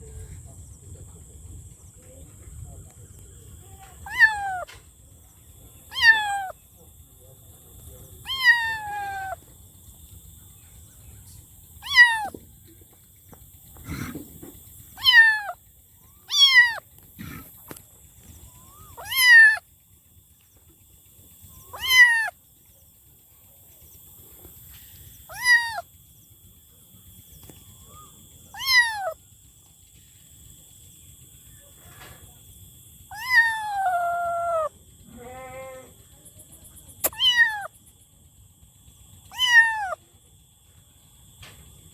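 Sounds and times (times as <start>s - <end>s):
kitten meowing: 4.0s - 4.8s, 5.9s - 6.6s, 8.2s - 9.4s, 11.8s - 12.4s, 15.0s - 15.6s, 16.2s - 16.8s, 18.6s - 19.6s, 21.7s - 22.4s, 25.3s - 25.8s, 28.5s - 29.2s, 33.1s - 34.7s, 37.0s - 37.7s, 39.3s - 40.0s.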